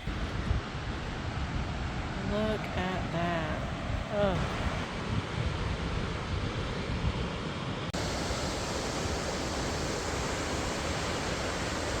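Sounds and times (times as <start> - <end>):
wind buffeting microphone: 0.0 - 12.0
waterfall rushing: 8.0 - 12.0.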